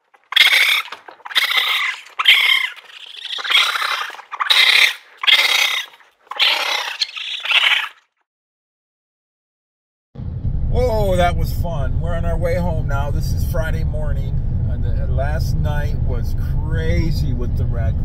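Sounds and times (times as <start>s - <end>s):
raccoons crying harshly: 0.2s - 8.0s.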